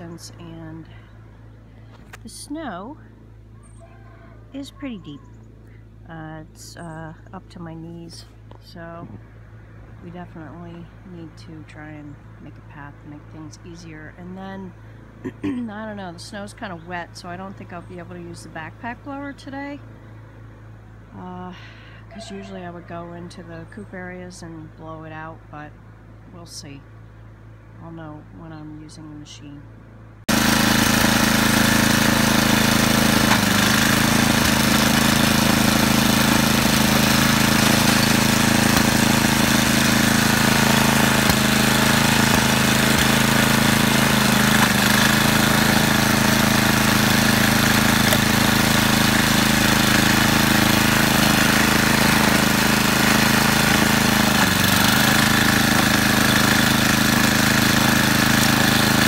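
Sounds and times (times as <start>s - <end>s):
snowblower engine running: 0.0s - 3.8s, 30.2s - 59.0s.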